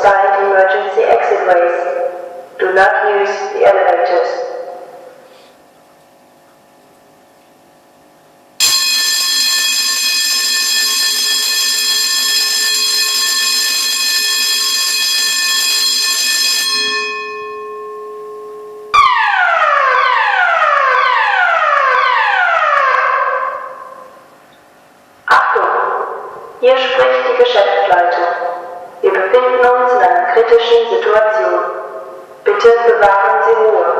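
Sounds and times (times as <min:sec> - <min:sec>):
electronic alarm tone: 0:08.6 - 0:24.3.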